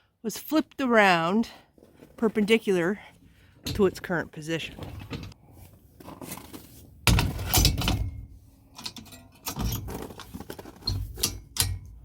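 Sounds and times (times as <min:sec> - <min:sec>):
metal clanks and rattles: 0:03.6 - 0:05.4, 0:06.0 - 0:12.0.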